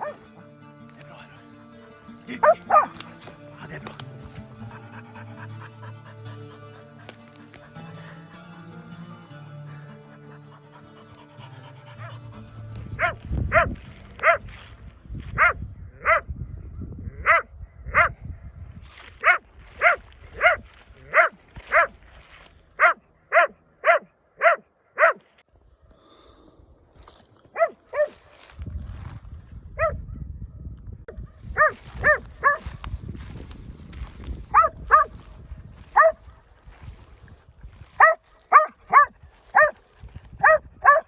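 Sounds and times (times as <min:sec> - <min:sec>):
dog barking high-pitched: 0:00.0 - 0:00.2, 0:02.4 - 0:03.0, 0:13.0 - 0:14.5, 0:15.4 - 0:16.3, 0:17.2 - 0:18.2, 0:19.2 - 0:22.0, 0:22.8 - 0:25.2, 0:27.6 - 0:28.2, 0:29.8 - 0:30.0, 0:31.6 - 0:32.6, 0:34.5 - 0:35.1, 0:35.9 - 0:36.2, 0:38.0 - 0:39.8, 0:40.4 - 0:41.0.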